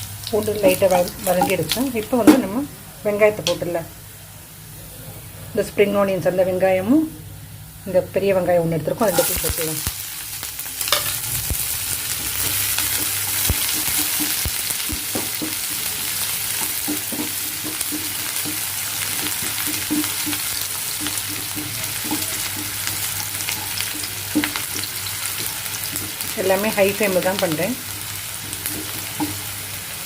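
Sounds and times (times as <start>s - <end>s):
onions sizzling in hot oil: 0.0s - 4.5s, 5.6s - 30.0s
spoon tapping and scraping pan: 0.9s - 2.6s, 10.9s - 11.2s, 12.2s - 27.2s, 27.8s - 29.6s.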